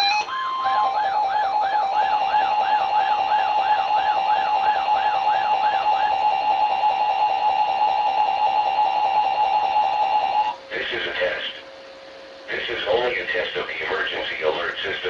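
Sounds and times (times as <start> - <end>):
warbling alarm tone: 0.0 - 10.7.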